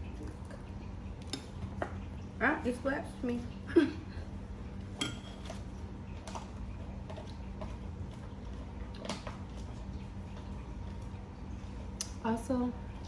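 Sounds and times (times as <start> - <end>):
dishes clinking: 5.0 - 5.6.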